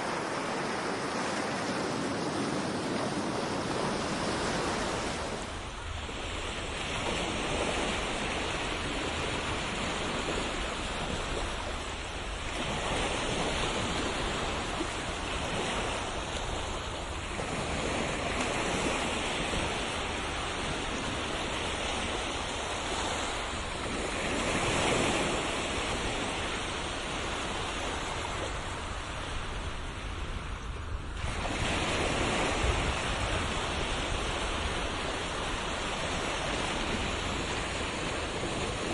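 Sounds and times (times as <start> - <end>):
low rumble of wind: 0.0 - 38.9
ocean waves washing onto shore: 0.0 - 38.9.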